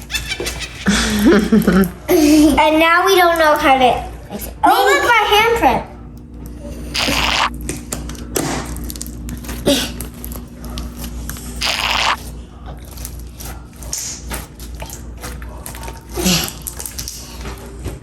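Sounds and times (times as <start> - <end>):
slime squelching by hand: 6.8 - 7.8, 8.4 - 18.0.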